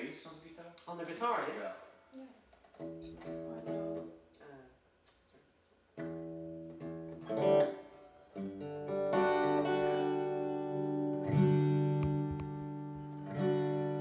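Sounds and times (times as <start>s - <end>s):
acoustic guitar chords: 2.8s - 4.2s, 6.0s - 14.0s.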